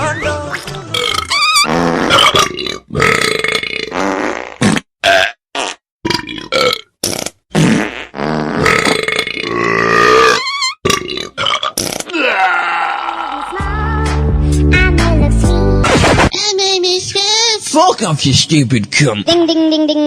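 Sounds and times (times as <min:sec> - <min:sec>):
burping ringtone: 0:01.0 - 0:03.3.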